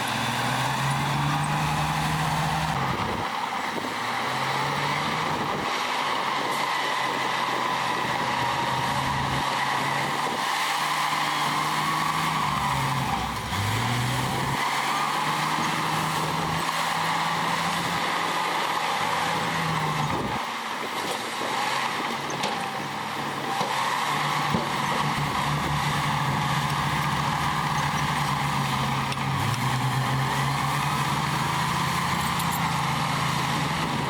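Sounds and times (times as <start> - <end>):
diesel earthmoving machinery: 0.0 - 34.0.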